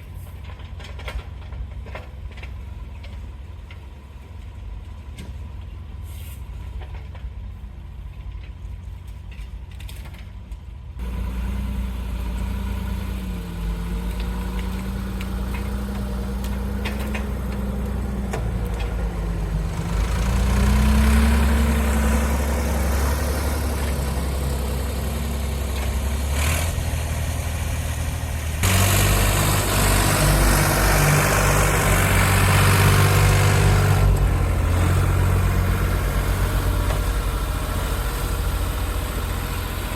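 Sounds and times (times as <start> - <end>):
excavator diesel engine running: 11.0 - 39.9.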